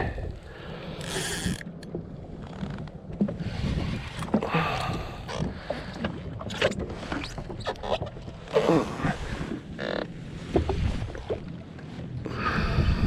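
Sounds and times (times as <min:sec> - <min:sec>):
water against hull: 0:00.0 - 0:13.0
wind on microphone: 0:03.3 - 0:05.6, 0:12.2 - 0:13.0.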